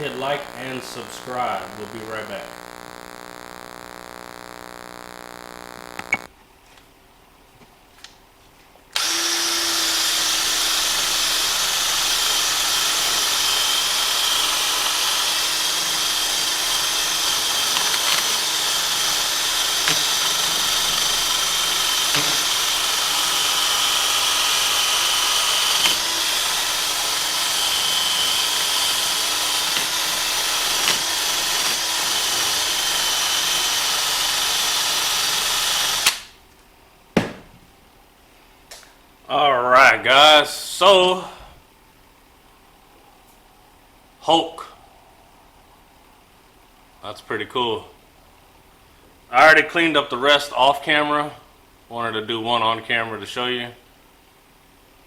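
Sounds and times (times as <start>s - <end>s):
small high-speed power tool: 0.2s - 6.3s, 9.0s - 36.3s.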